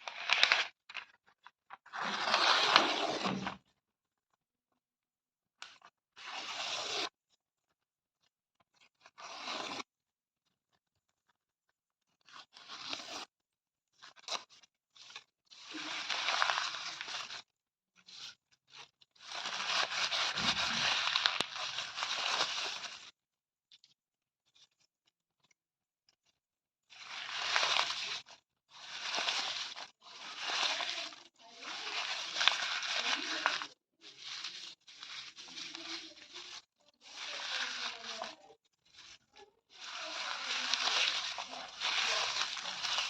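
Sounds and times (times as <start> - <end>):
paper tearing: 0.1 - 0.7, 1.9 - 3.6, 9.2 - 9.8, 15.0 - 17.4, 19.2 - 23.1, 27.0 - 43.0.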